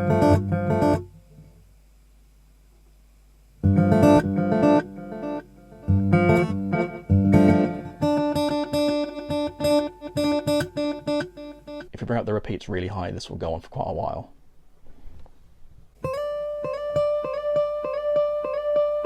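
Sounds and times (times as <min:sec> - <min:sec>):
acoustic guitar chords with echo: 0:00.0 - 0:01.4, 0:03.6 - 0:11.9, 0:16.0 - 0:19.0.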